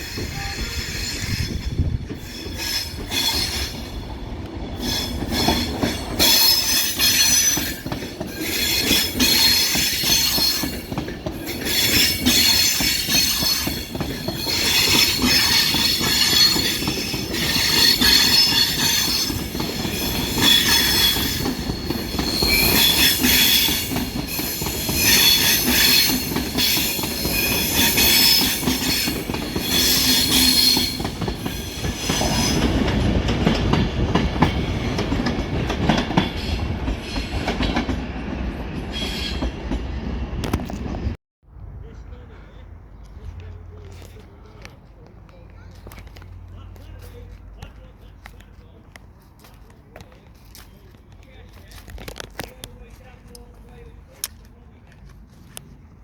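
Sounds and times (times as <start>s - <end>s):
train wheels squealing: 0.0s - 4.1s, 4.7s - 32.8s, 34.5s - 40.4s
train rumbling on rails: 0.0s - 56.0s.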